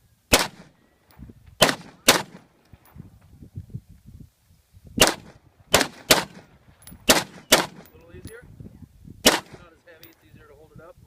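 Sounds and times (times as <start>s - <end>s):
gunshots: 0.3s - 0.7s, 1.6s - 2.5s, 5.0s - 7.9s, 9.2s - 9.6s.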